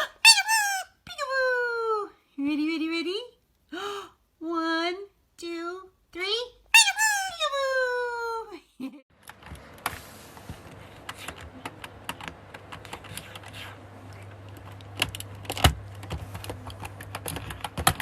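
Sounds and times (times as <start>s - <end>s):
irregular clicking and tapping: 9.2s - 18.0s
low steady hum: 9.2s - 18.0s.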